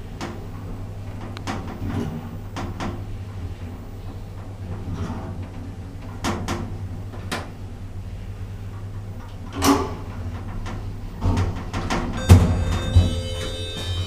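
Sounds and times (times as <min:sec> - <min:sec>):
lift humming: 0:10.0 - 0:14.0.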